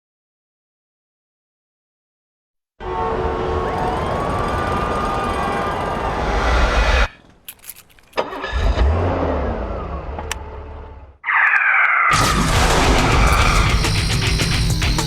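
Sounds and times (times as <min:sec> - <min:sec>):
car engine winding down: 0:02.8 - 0:11.2
short falling tone: 0:02.9 - 0:07.1
loud rock music: 0:12.1 - 0:15.0.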